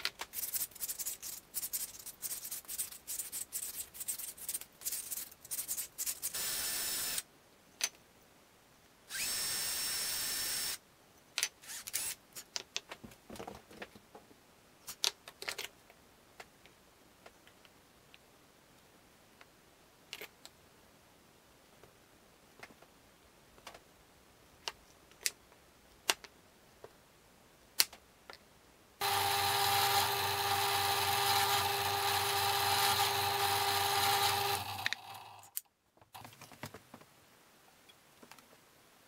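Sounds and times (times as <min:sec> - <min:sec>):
small power tool whining: 0:06.4 - 0:07.2, 0:09.1 - 0:10.8, 0:29.0 - 0:35.6.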